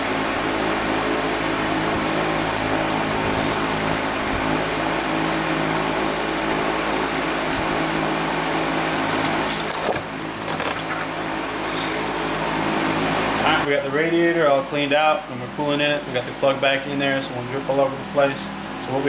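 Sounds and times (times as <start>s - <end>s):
low machine hum: 0.0s - 19.0s
coolant splashing into a pan: 9.2s - 11.2s.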